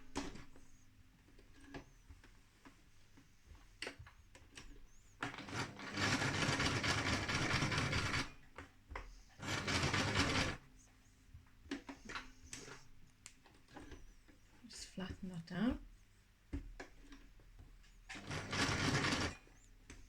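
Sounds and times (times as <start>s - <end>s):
sewing machine running: 5.2s - 8.4s, 9.4s - 10.6s, 18.1s - 19.5s.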